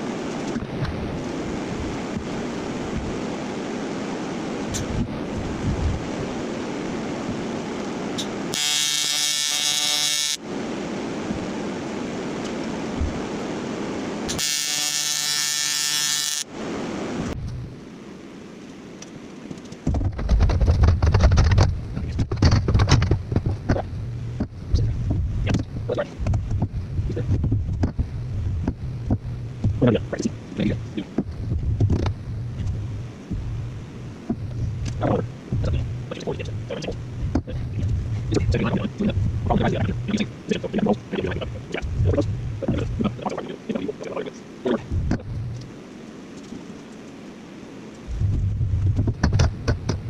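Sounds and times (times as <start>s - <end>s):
steady rushing noise: 0.0s - 8.6s, 10.4s - 14.4s, 16.4s - 50.0s
small electric motor whining: 8.5s - 10.4s, 14.4s - 16.5s.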